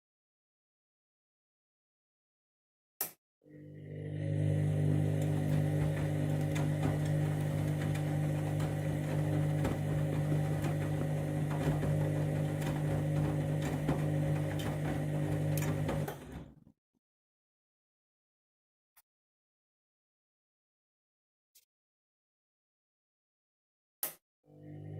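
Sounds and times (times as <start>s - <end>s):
washing machine motor hum: 3.5s - 16.6s, 24.5s - 24.9s
tumbling drum clicks and knocks: 5.1s - 16.4s.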